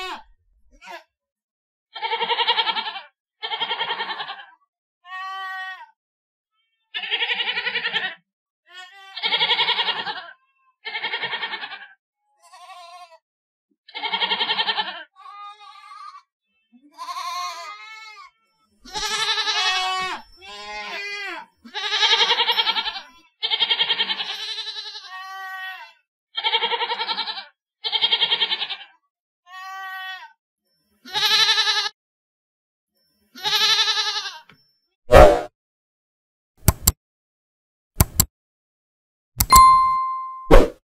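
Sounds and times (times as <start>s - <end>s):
goats bleating: 0.0s - 0.2s, 2.0s - 4.5s, 6.9s - 13.2s, 13.9s - 16.2s, 16.9s - 18.3s, 18.9s - 28.9s, 29.5s - 30.3s, 31.1s - 31.9s, 33.4s - 34.5s.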